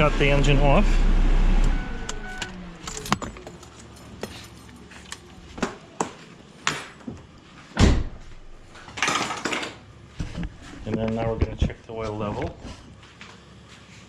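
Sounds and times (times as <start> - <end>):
keys and car door clicks: 2.4 - 5.3.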